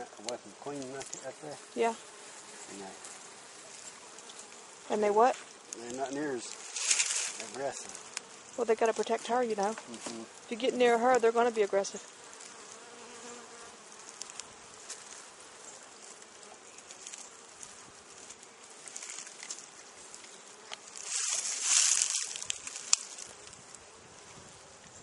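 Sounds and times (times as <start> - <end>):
honeybees buzzing: 0.0 - 25.0
rustling noise: 5.2 - 8.2, 13.8 - 25.0.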